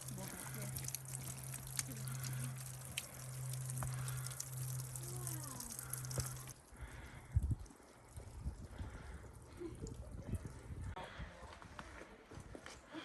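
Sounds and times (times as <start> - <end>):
water flowing: 0.0 - 7.0
low hum: 0.0 - 7.3.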